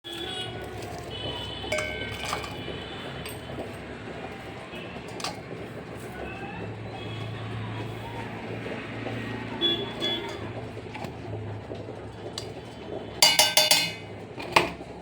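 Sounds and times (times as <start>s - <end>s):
utensils clinking against dishes: 0.1s - 3.8s, 5.1s - 5.6s, 13.2s - 14.8s.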